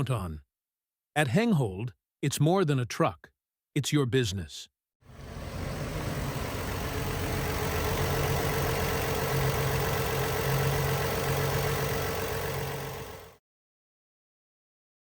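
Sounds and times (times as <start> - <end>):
van engine idling: 5.1 - 13.4.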